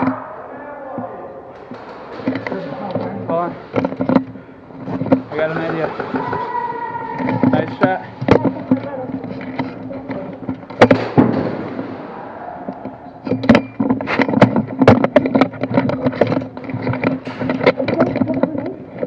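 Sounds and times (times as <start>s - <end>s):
steady hum: 0.0s - 19.0s
pellets striking: 1.6s - 18.3s
airsoft gunshots: 10.8s - 12.6s.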